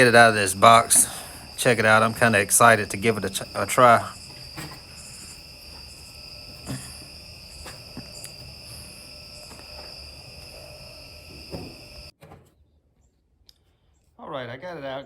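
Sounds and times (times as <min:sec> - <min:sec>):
crickets chirring: 0:00.0 - 0:12.1
handling knocks and rustles: 0:03.0 - 0:12.6.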